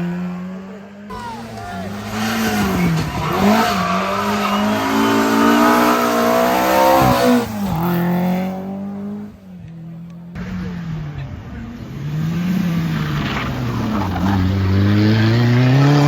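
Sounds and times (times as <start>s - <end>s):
rally car engine revving: 0.0s - 16.0s.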